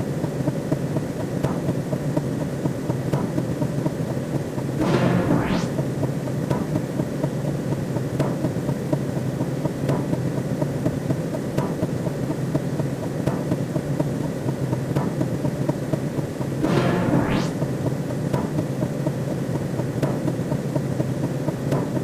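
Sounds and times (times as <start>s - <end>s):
low rumbling drone: 4.8s - 6.2s, 16.6s - 18.1s.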